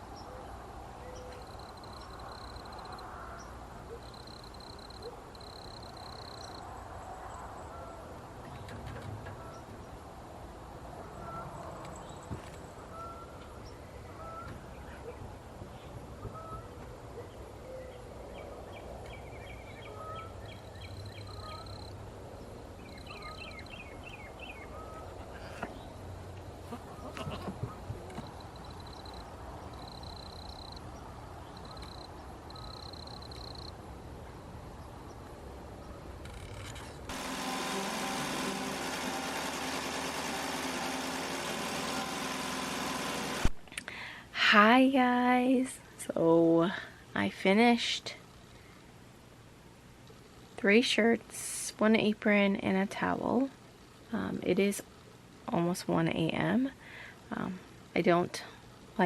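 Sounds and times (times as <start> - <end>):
poultry calling: 11.0 - 11.6, 12.9 - 13.4, 14.0 - 15.2, 19.8 - 20.4, 21.1 - 21.9, 24.5 - 25.8, 26.6 - 29.2
birds chirping: 11.1 - 33.7
motor humming: 37.1 - 43.6.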